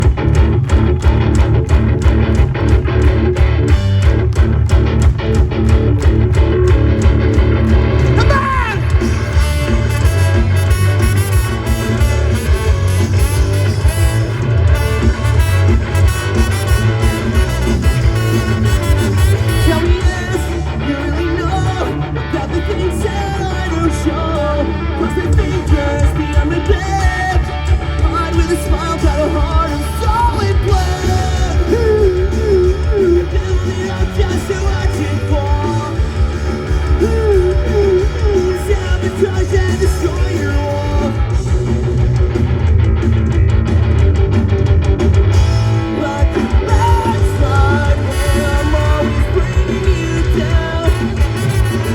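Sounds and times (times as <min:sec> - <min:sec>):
live rock band playing: 0:00.0 - 0:51.9.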